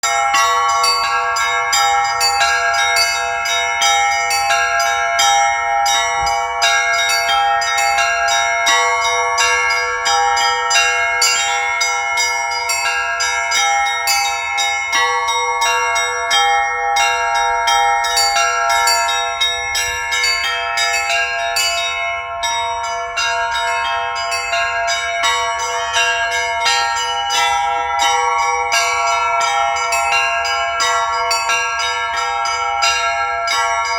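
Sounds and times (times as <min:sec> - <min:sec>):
hand bells ringing in a peal: 0:00.0 - 0:33.9.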